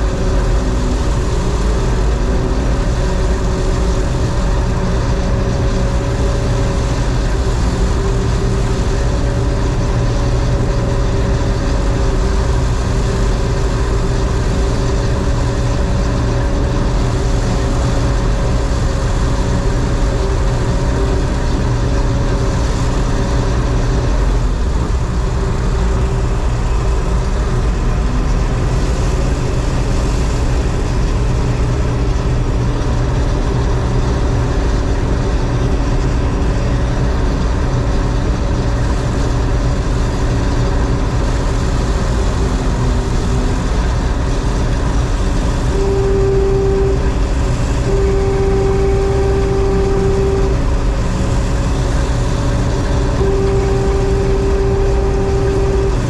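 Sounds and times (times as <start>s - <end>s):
combine harvester running: 0.0s - 56.0s
steady tone: 39.4s - 56.0s.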